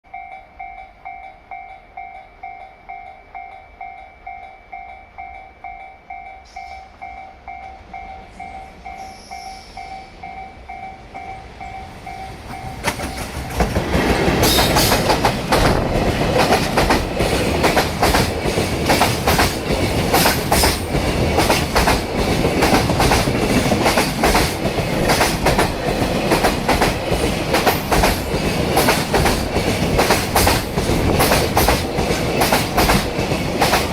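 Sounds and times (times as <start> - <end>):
train wheels clattering over joints: 12.6 - 33.9.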